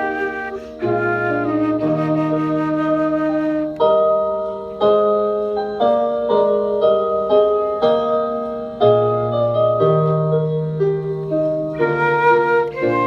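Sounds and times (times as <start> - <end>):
piano chords: 0.0 - 13.0.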